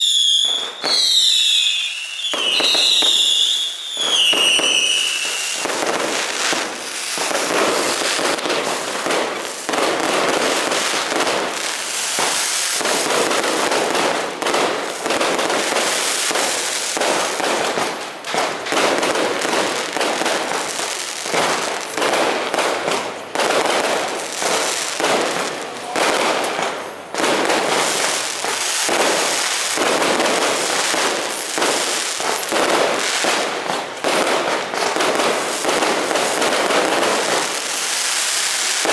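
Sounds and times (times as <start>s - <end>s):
whistling firework shells: 0.0s - 8.5s
firework bangs crackling: 0.0s - 38.9s.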